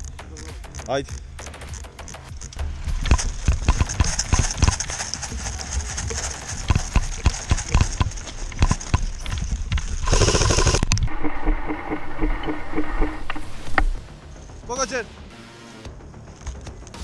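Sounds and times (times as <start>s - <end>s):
rustling burst: 2.4s - 8.0s
sharp knocks and clicks: 10.1s - 14.0s
steady hiss: 10.1s - 14.1s.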